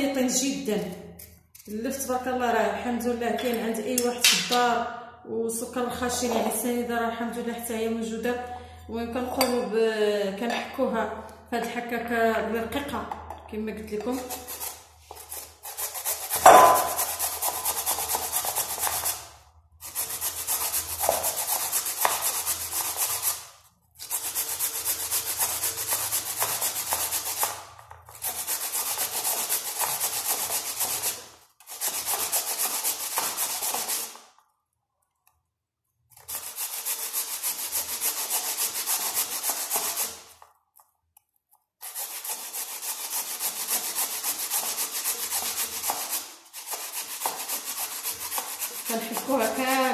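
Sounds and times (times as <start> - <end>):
turnip rasping on a grater: 14.0 - 34.2, 36.1 - 40.4, 41.8 - 49.9.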